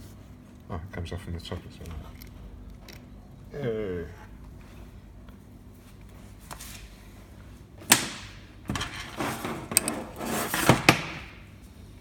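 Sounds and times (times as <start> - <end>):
rustling and scraping: 8.7 - 11.1.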